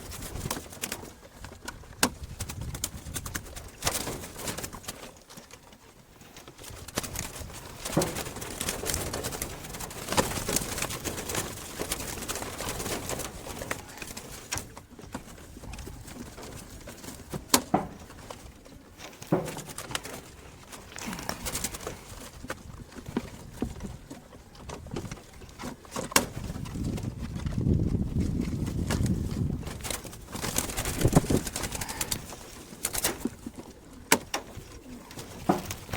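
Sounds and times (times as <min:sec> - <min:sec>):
rustling: 0:00.0 - 0:35.9
doves cooing: 0:07.7 - 0:35.9.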